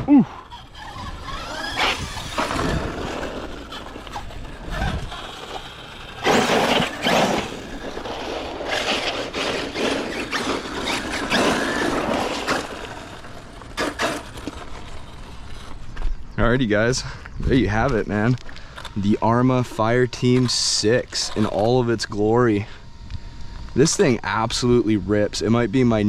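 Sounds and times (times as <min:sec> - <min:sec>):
radio-controlled car motor surging: 0:00.3 - 0:16.0.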